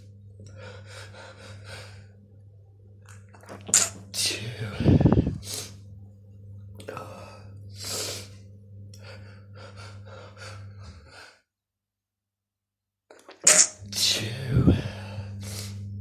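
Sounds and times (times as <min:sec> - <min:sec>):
faint breaths: 0:00.0 - 0:02.2, 0:06.7 - 0:11.5, 0:13.8 - 0:16.0
low hum: 0:00.0 - 0:11.3, 0:13.5 - 0:16.0
person gasping: 0:09.0 - 0:11.5, 0:13.8 - 0:16.0.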